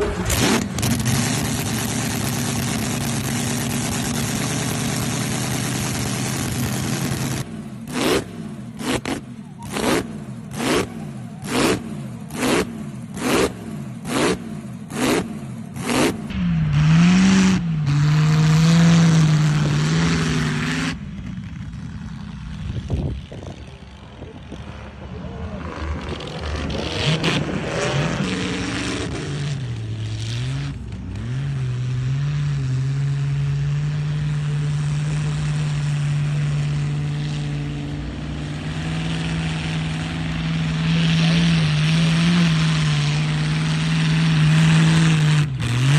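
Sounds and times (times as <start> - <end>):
old car engine running: 0.0 - 16.7.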